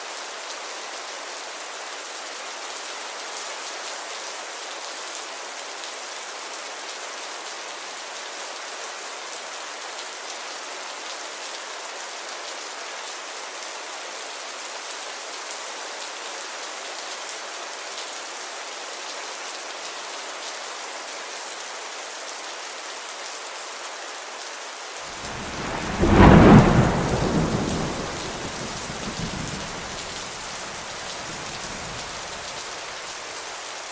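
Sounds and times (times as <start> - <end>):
steady rainfall: 0.0 - 33.9
loud thunderclap: 25.2 - 32.6.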